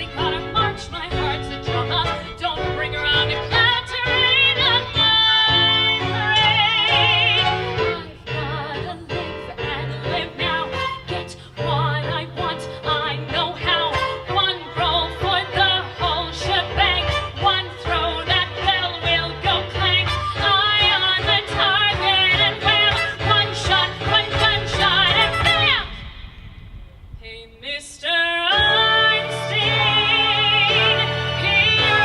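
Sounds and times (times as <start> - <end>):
instrumental accompaniment: 0.0 - 26.1
woman singing with vibrato: 0.0 - 26.3, 27.2 - 32.0.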